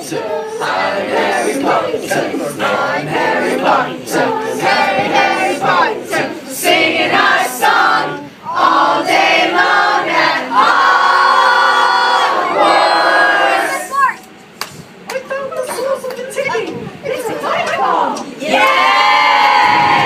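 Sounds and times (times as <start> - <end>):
crowd singing a chant: 0.0 - 13.9.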